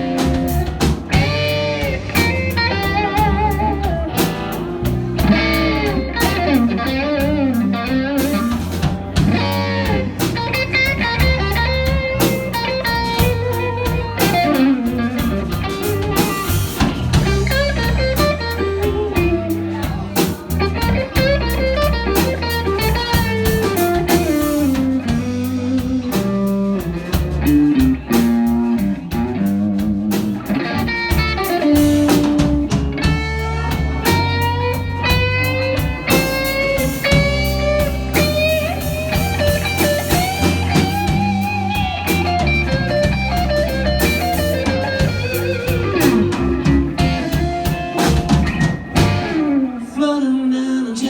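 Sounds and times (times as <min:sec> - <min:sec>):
drum kit: 0:00.0 - 0:49.9
electric guitar solo: 0:00.0 - 0:50.9
bass guitar: 0:00.0 - 0:51.0.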